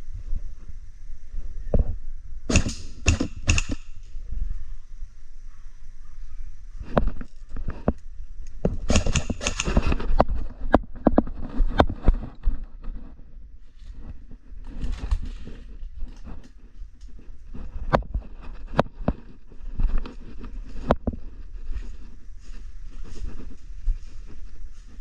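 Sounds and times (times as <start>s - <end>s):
wind rumble on microphone: 0.0s - 25.0s
microphone handling noise: 6.8s - 25.0s
sharp clicks and snaps: 7.2s - 10.8s.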